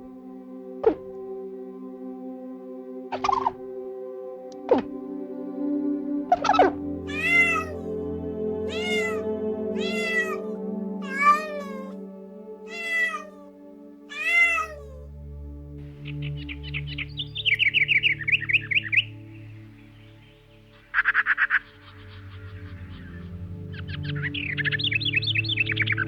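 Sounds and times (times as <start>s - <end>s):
background music: 0.0s - 26.0s
cat meowing: 7.1s - 7.9s, 8.7s - 12.0s, 12.7s - 13.5s, 14.1s - 15.1s.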